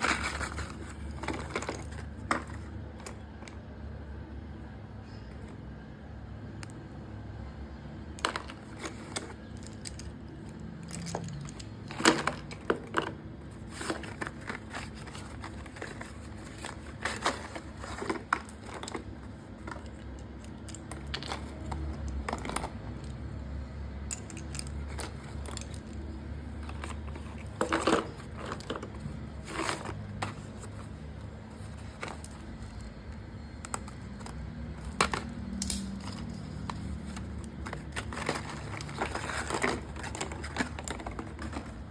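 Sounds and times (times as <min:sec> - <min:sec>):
plastic packaging crinkling: 0:08.3 - 0:22.8, 0:33.7 - 0:41.9.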